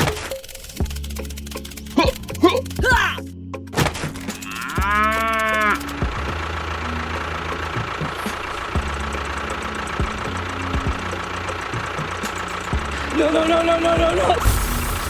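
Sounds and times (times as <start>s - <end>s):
tractor engine idling: 4.2s - 15.0s.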